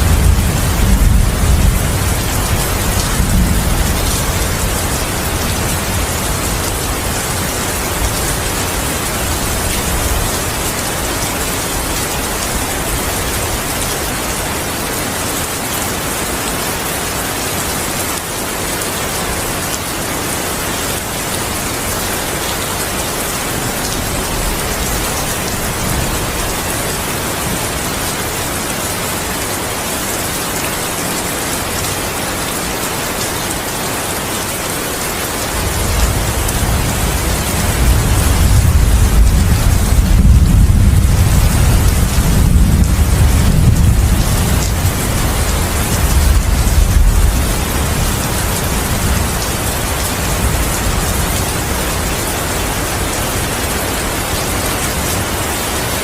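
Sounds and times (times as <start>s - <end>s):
heavy rain hissing: 0.0s - 56.0s
distant thunder rumble: 35.7s - 50.7s.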